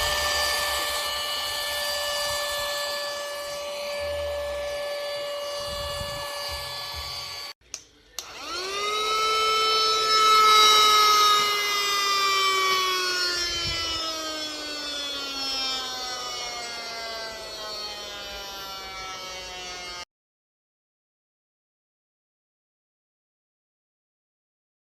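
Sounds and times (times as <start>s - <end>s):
cordless vacuum motor whining: 0.0s - 7.6s, 8.2s - 20.0s.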